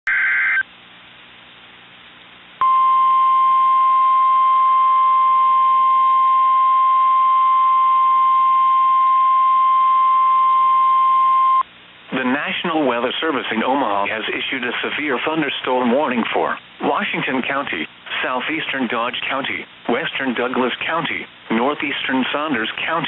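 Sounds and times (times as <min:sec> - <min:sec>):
faint radio hiss: 0:00.1 - 0:02.7, 0:11.6 - 0:23.0
loud steady alert beep: 0:02.6 - 0:11.6.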